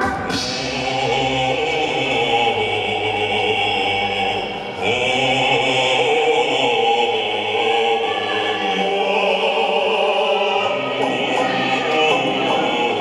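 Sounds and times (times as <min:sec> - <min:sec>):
choir-like singing: 0:00.0 - 0:13.0.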